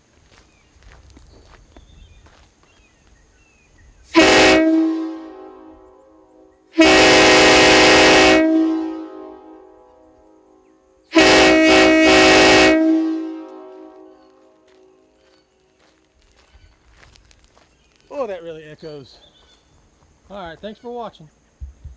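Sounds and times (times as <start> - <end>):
locomotive horn blasts: 4.1 - 15.3.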